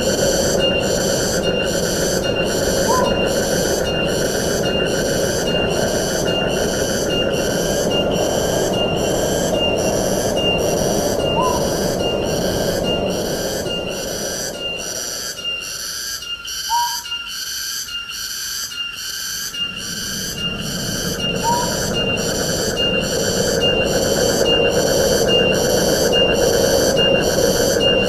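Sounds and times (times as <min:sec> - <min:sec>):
insects chirping rhythmically: 0:00.0 - 0:28.0
wind through trees: 0:00.0 - 0:28.0
rising whistled bird call: 0:02.8 - 0:04.1, 0:10.4 - 0:13.1, 0:13.7 - 0:18.1, 0:18.7 - 0:24.7.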